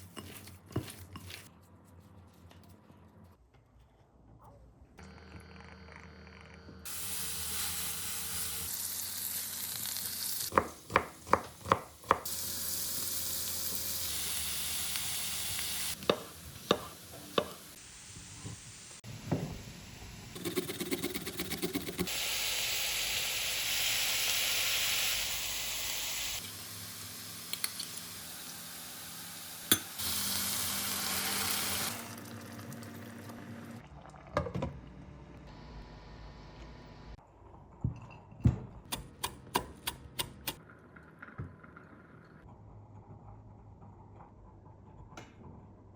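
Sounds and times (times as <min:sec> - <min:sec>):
food sizzling in oil: 0:06.9 - 0:11.3, 0:12.0 - 0:19.0, 0:22.1 - 0:32.4.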